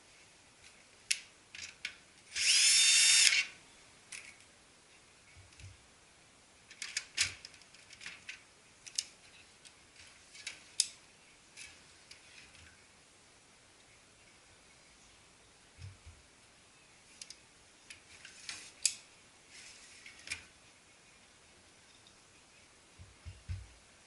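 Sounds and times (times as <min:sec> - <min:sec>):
power screwdriver whine: 0:02.3 - 0:03.5.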